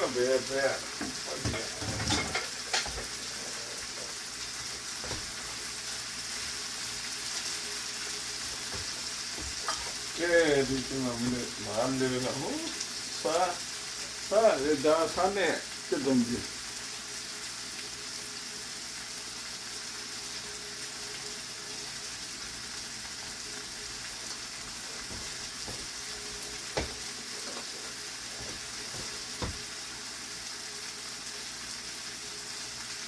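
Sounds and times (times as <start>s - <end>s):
food sizzling in a pan: 0.0s - 33.0s
utensil knocking on pan: 26.7s - 27.7s, 28.4s - 29.6s.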